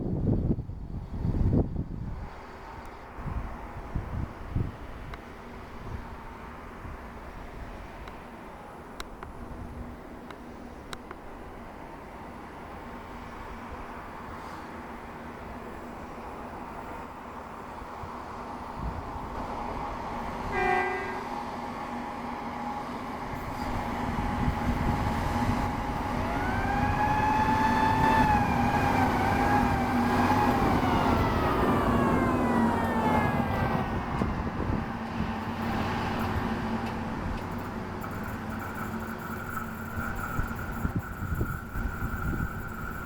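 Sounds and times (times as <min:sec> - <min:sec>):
rail machine engine and wheels: 0:00.0 - 0:43.0
machine horn blasts: 0:20.5 - 0:21.3.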